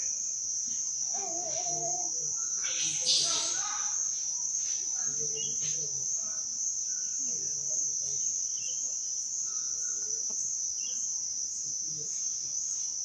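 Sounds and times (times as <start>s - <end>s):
insect chorus trilling: 0.0s - 13.0s
faint voices: 1.1s - 4.1s.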